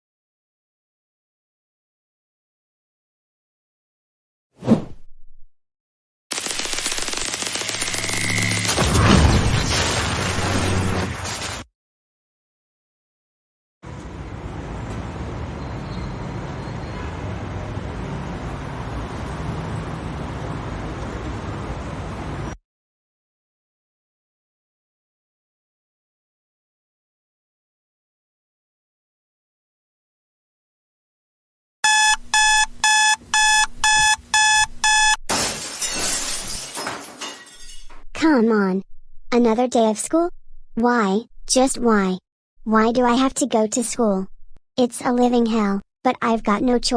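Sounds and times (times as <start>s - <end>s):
glass breaking crash: 8.7s - 11.7s, 35.3s - 37.9s
road traffic rumble: 13.9s - 22.6s
alarm clock beeping: 31.8s - 35.3s.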